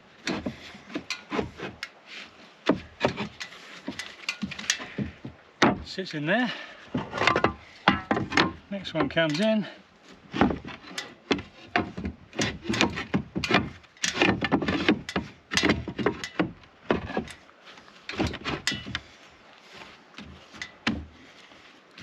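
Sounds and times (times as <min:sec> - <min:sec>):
roof tiles knocking and scraping: 0:06.9 - 0:09.5, 0:10.3 - 0:17.4.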